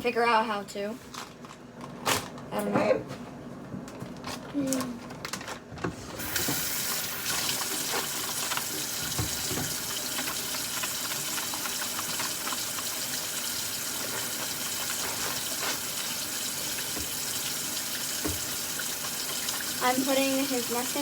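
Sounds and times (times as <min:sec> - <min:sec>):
water running from tap: 0:06.2 - 0:21.0.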